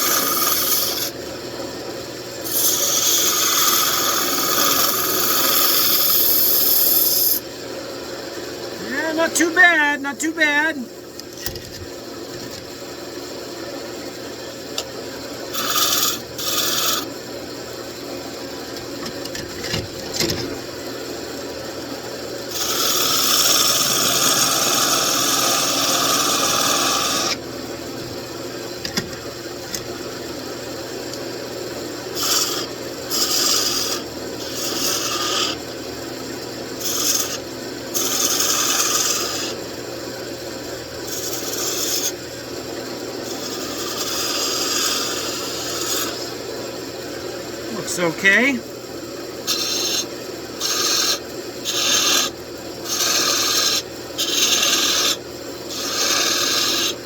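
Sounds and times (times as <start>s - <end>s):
chisel scraping spinning wood: 0.0s - 1.2s, 2.4s - 7.4s, 15.5s - 17.2s, 22.5s - 27.4s, 32.1s - 35.7s, 36.8s - 37.4s, 38.0s - 39.6s, 41.1s - 42.2s, 43.2s - 46.4s, 49.4s - 57.0s
wood lathe humming: 0.0s - 1.2s, 2.4s - 7.4s, 15.4s - 17.2s, 22.5s - 27.4s, 32.1s - 35.7s, 36.7s - 39.6s, 41.1s - 42.2s, 43.2s - 46.4s, 47.6s - 48.6s, 49.4s - 57.0s.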